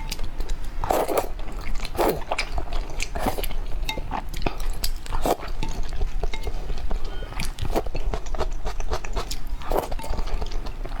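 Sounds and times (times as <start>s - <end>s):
low steady hum: 0.0s - 11.0s
person chewing food: 0.0s - 11.0s.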